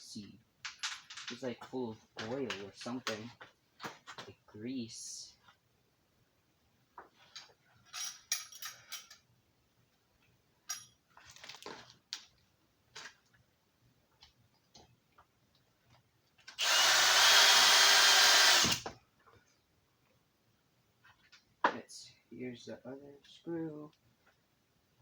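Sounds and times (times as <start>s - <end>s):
power drill driving screw: 16.5s - 18.9s.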